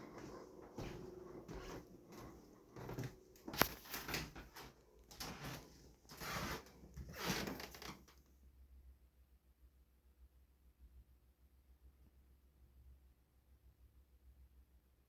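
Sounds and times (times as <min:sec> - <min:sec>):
scuffing and rustling: 0:00.0 - 0:08.0.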